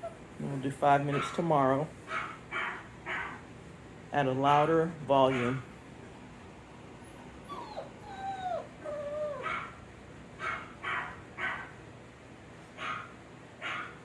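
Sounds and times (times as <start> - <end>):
dog whining: 0.0 - 0.3, 7.0 - 9.8
dog barking: 2.1 - 3.4, 5.3 - 5.6, 9.4 - 9.8, 10.4 - 11.7, 12.8 - 14.0.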